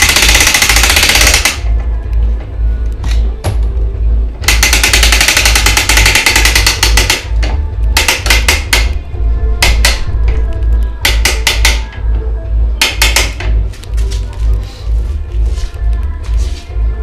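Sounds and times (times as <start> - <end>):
winch ratchet clicking: 0.0 - 1.7, 4.4 - 9.0
background music: 0.0 - 17.0.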